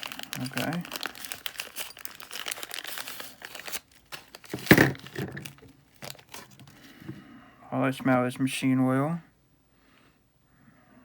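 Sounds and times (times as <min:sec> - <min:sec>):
plastic packaging crinkling and tearing: 0:00.0 - 0:06.9.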